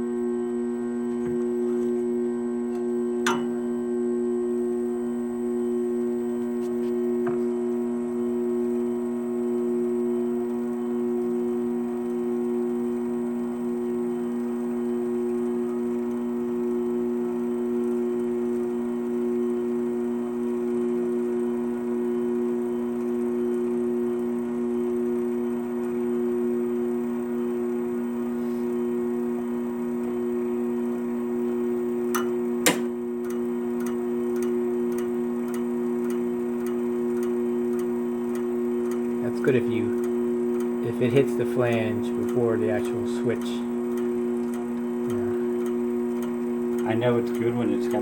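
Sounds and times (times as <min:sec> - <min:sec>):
wire-spooling machine motor hum: 0:00.0 - 0:48.0
regular ticking: 0:33.2 - 0:48.0
sharp machine click: 0:41.6 - 0:48.0.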